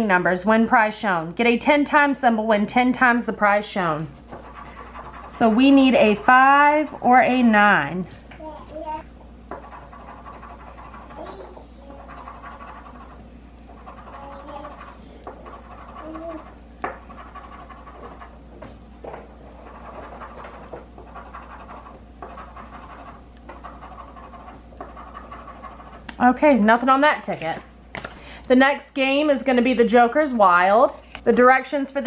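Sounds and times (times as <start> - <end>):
scratch card scraping: 4.3 - 7.5, 9.6 - 11.2, 12.0 - 18.3, 19.6 - 26.1.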